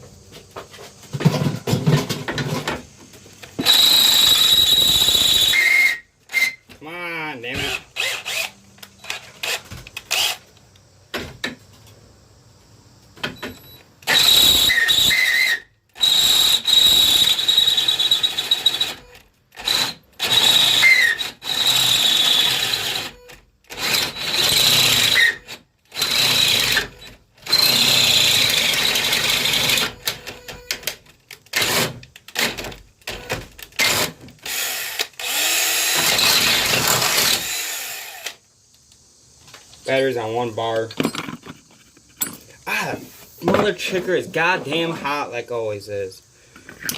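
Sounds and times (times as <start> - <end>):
power drill boring a hole: 3.6 - 6.6, 7.6 - 10.4, 14.1 - 19.0, 19.6 - 29.9, 33.8 - 38.4.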